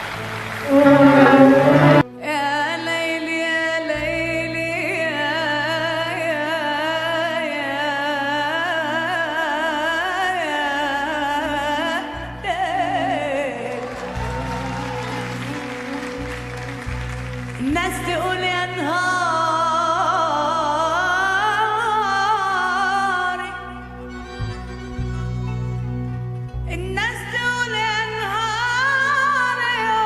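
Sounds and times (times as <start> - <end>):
instrumental backing: 0.6 - 2.2
person singing with vibrato: 0.6 - 2.5.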